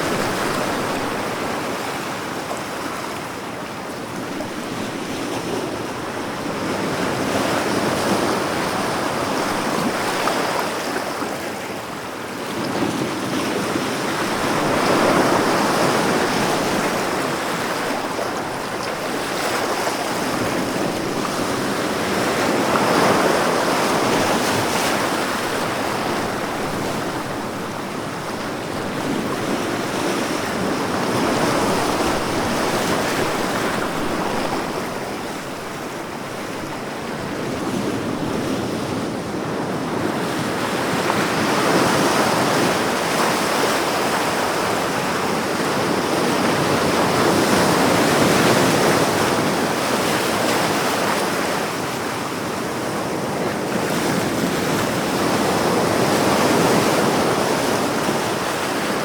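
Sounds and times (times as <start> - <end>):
waves breaking: 12.8 - 59.0.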